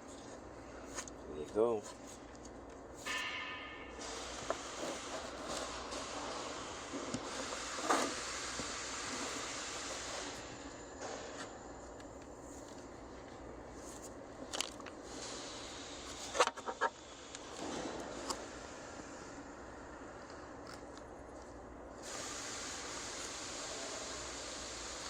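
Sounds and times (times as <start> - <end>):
steady background hiss: 21.2 - 25.0.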